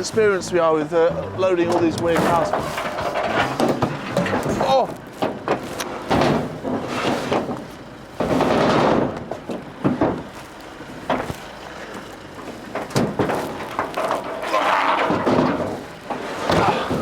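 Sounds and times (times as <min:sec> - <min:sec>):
scraping rush: 0:00.0 - 0:05.0
metallic knocks and clunks: 0:01.2 - 0:10.3, 0:12.6 - 0:17.0.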